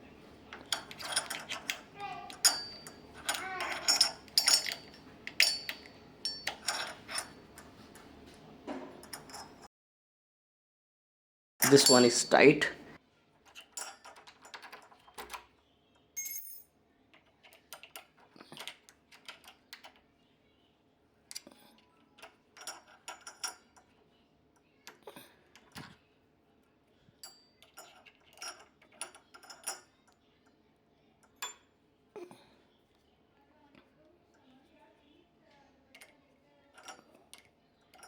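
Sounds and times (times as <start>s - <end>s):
small metal hardware clicks: 0.5s - 8.1s, 13.4s - 15.5s, 21.3s - 23.9s, 27.2s - 30.2s, 35.9s - 38.0s.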